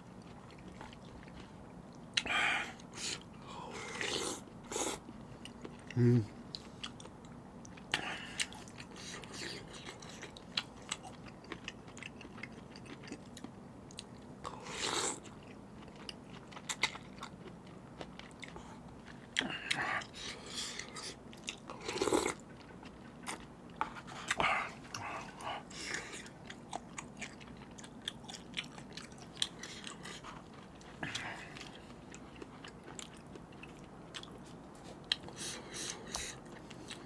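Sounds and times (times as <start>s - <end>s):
chewing and biting noodles: 7.7s - 37.0s.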